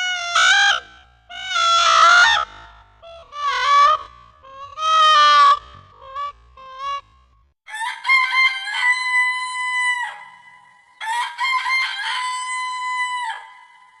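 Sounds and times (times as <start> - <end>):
rooster crowing: 7.7 - 13.9.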